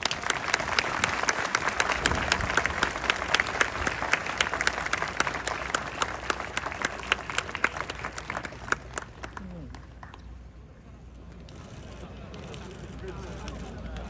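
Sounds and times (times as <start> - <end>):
crowd applauding: 0.0 - 10.4.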